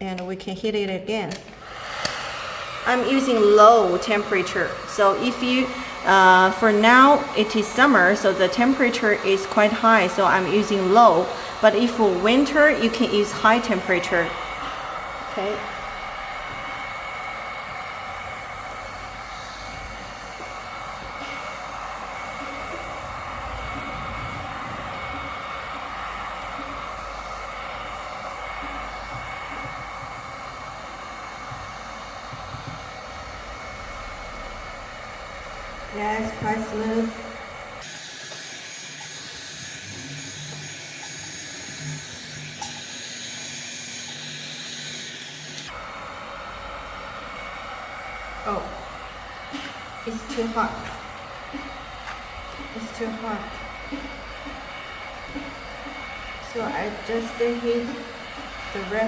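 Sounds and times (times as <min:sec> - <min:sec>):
heat gun blowing air: 0:01.3 - 0:59.0.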